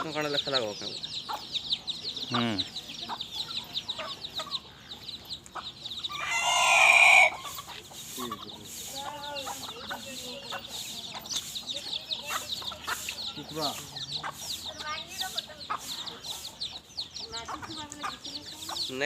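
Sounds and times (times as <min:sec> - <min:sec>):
chicks peeping: 0:00.0 - 0:19.0
hen clucking: 0:00.0 - 0:19.0
rooster crowing: 0:06.1 - 0:07.5.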